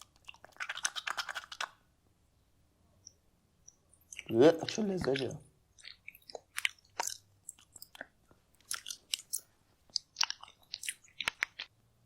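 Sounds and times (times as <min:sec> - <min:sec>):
person chewing crunchy food: 0:00.0 - 0:01.8, 0:04.0 - 0:11.8
wet mouth clicks: 0:00.0 - 0:01.8, 0:03.0 - 0:11.7.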